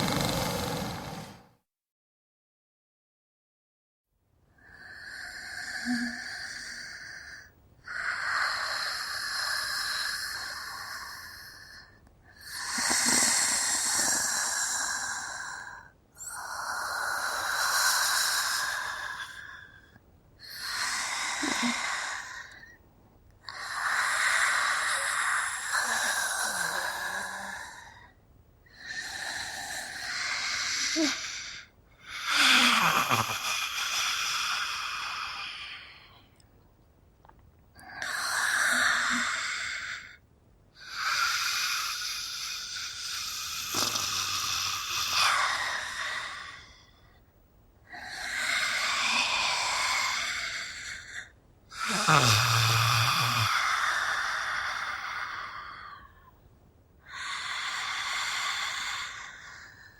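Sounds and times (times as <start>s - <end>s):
rasping creature groans and hisses: 0.0s - 1.5s, 43.3s - 45.4s, 51.8s - 53.6s.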